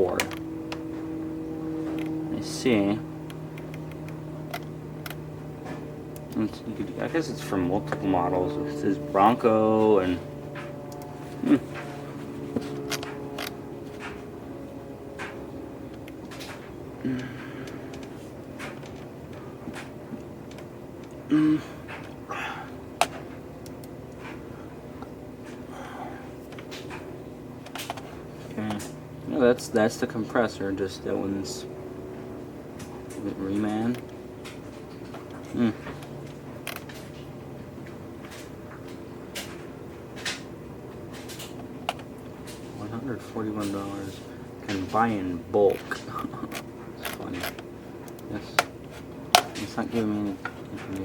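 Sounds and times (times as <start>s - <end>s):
low room hum: 0.0s - 51.0s
man murmuring: 11.4s - 11.8s, 17.0s - 17.9s, 21.3s - 22.7s, 35.5s - 35.9s, 45.0s - 46.6s.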